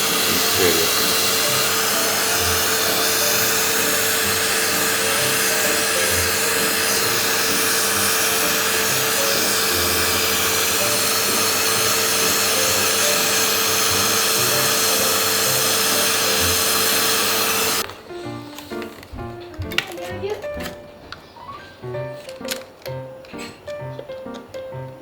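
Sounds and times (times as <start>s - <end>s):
grooming vacuum running: 0.0s - 18.1s
background music: 0.0s - 25.0s.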